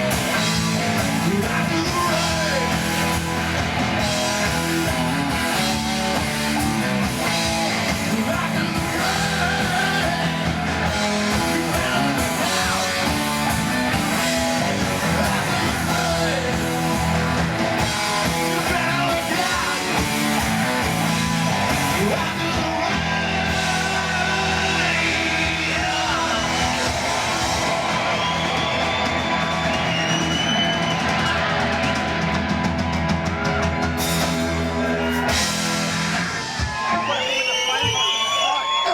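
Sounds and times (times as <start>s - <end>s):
rock music with electric guitar: 0.0s - 38.8s
person singing: 0.8s - 3.2s, 7.6s - 17.1s, 18.3s - 20.4s, 21.7s - 27.3s.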